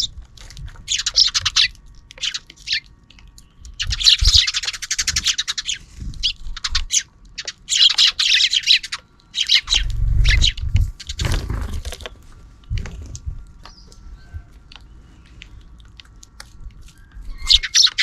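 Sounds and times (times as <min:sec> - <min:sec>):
sparrows chattering: 0:00.0 - 0:12.2, 0:13.0 - 0:18.0
low thuds and rustling: 0:10.0 - 0:13.5.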